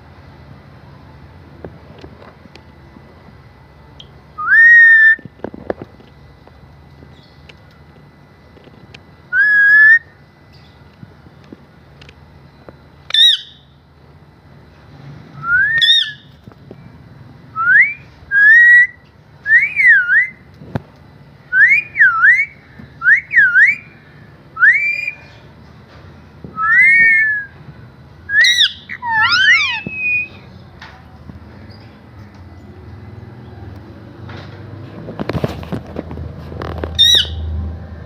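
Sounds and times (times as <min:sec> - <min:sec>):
parrot whistling: 0:04.4 - 0:05.2, 0:09.3 - 0:10.1, 0:13.1 - 0:13.6, 0:15.4 - 0:16.2, 0:17.6 - 0:20.4, 0:24.6 - 0:25.2, 0:26.6 - 0:27.5, 0:28.3 - 0:30.5, 0:37.0 - 0:37.4
sharp high parrot calls: 0:13.1 - 0:13.6, 0:15.8 - 0:16.3, 0:28.3 - 0:30.5, 0:37.0 - 0:37.4.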